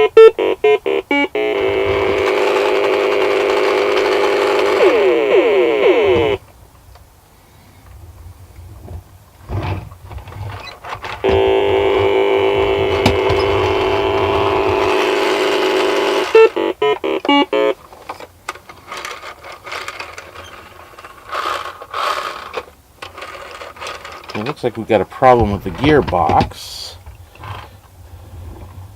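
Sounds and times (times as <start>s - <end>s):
buzzing synthesized tone: 0.0s - 6.4s, 11.2s - 17.8s
short electronic beeps: 15.2s - 17.7s.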